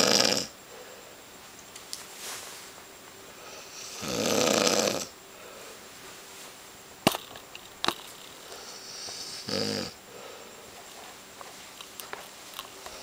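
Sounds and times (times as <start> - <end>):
person snoring: 0.0 - 0.6, 3.4 - 5.2, 8.5 - 10.4
breathy inhale: 5.3 - 5.8, 8.4 - 10.7.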